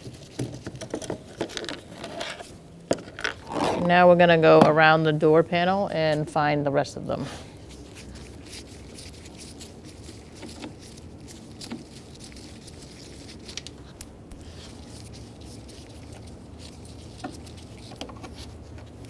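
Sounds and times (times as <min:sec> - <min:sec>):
low steady hum: 0:14.0 - 0:14.7.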